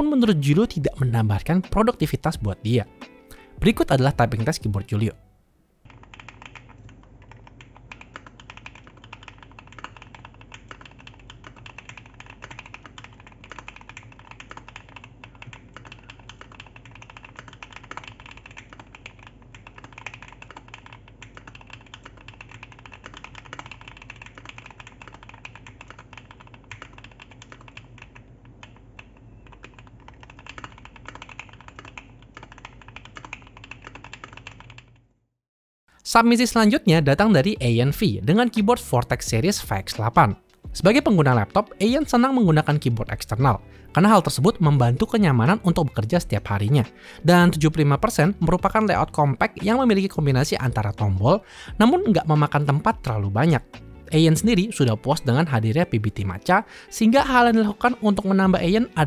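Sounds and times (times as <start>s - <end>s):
mechanical keyboard typing: 5.9s - 35.0s.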